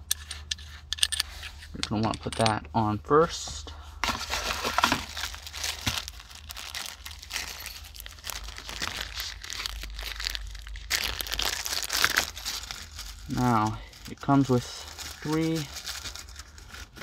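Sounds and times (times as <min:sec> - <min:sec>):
plastic packaging crinkling: 0:04.0 - 0:17.0.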